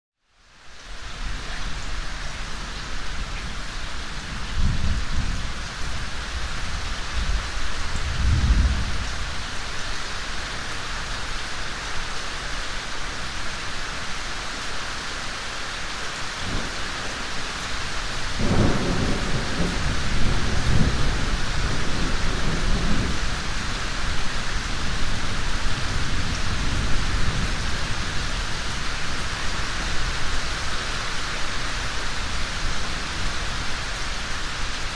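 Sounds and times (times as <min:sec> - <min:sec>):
heavy rain hissing: 0:00.3 - 0:34.9
thunder rumbling: 0:06.2 - 0:09.6, 0:16.4 - 0:28.5.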